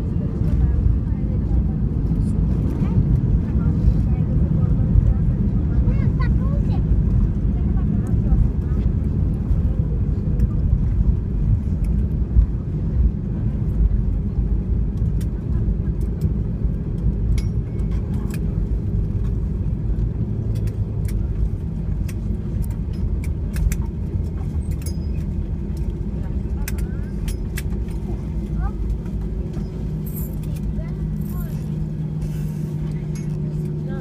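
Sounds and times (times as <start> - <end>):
aircraft cabin rumble: 0.0 - 34.0
light clicks and rattles: 20.0 - 33.8.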